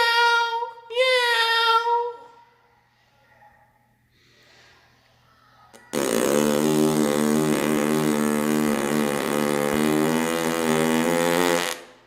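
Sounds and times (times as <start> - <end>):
long loud fart: 5.9 - 12.0.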